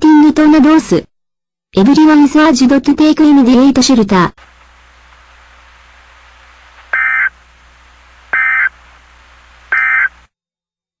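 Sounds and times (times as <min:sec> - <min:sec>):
faint steady hiss: 0:04.4 - 0:10.3
digital data tone bursts: 0:06.9 - 0:07.4, 0:08.3 - 0:08.8, 0:09.7 - 0:10.3.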